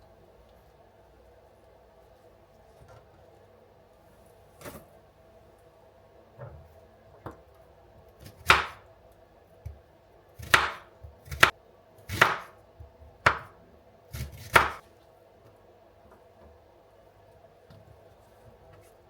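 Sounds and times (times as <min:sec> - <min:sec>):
knife chopping on cutting board: 0:08.2 - 0:08.8, 0:10.4 - 0:11.5, 0:12.1 - 0:12.6, 0:13.2 - 0:14.8.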